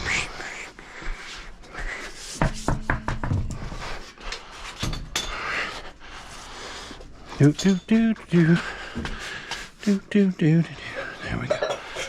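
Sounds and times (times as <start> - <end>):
sharp knocks: 2.4 - 3.5.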